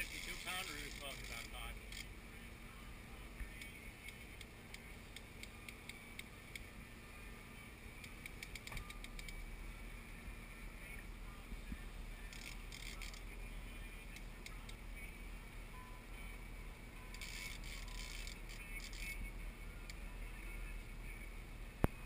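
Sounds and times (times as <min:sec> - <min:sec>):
low steady rumble: 0:00.0 - 0:22.0
fishing reel clicking: 0:12.3 - 0:13.2, 0:17.1 - 0:19.2.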